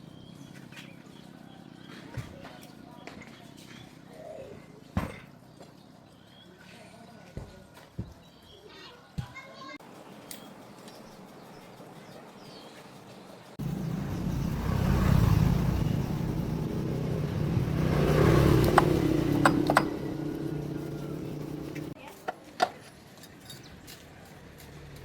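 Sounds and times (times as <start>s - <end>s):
engine running: 13.6s - 22.0s.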